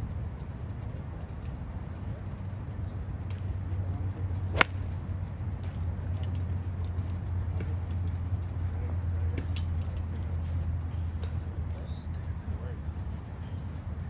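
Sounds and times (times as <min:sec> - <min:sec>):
steady low hum: 0:00.0 - 0:08.6
golf club striking a ball: 0:04.5 - 0:05.0.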